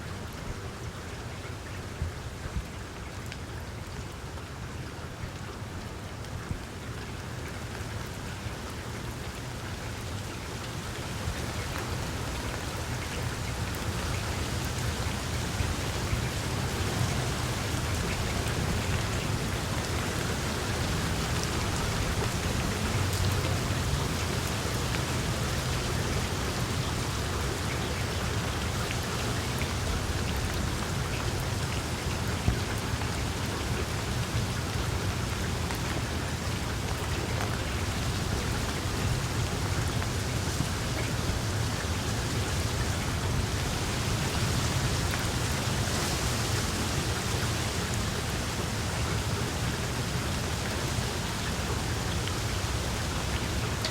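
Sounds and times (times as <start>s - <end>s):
rain on tree foliage: 0.0s - 53.9s.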